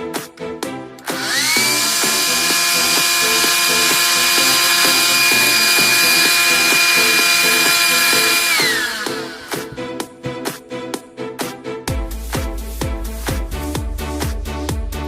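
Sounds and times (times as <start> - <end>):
handheld vacuum motor whining: 1.0 - 9.8.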